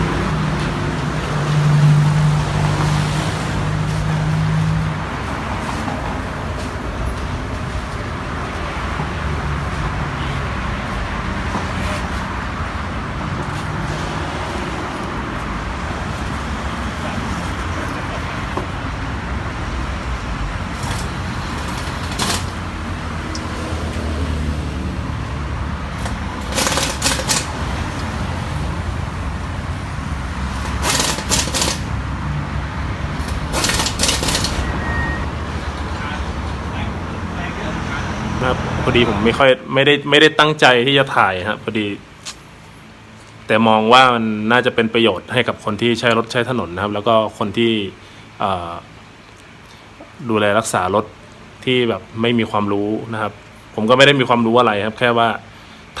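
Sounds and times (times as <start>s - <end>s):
road traffic noise: 0.0s - 56.0s
sharp clicks or knocks: 20.8s - 22.7s, 26.0s - 28.2s, 30.4s - 32.0s.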